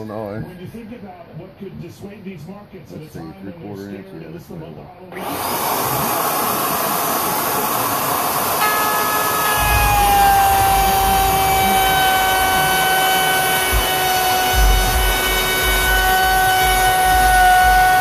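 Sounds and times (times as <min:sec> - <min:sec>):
router whine cutting wood: 0:05.1 - 0:18.0.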